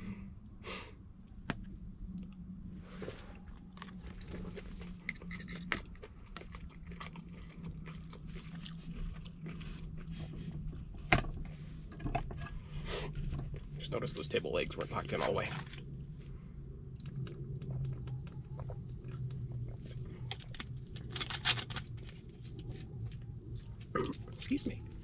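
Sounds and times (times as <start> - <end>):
steady low hum: 0.0 - 25.0
person chewing food: 3.3 - 13.8, 16.9 - 25.0.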